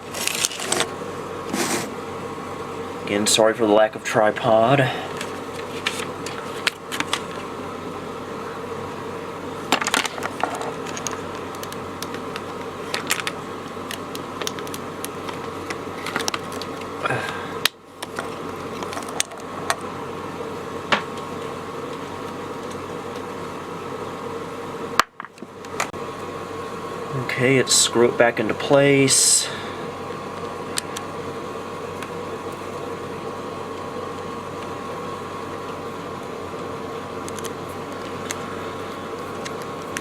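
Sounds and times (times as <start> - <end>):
steady hum: 0.0 - 40.0
small parts clicking and tapping: 9.7 - 16.9.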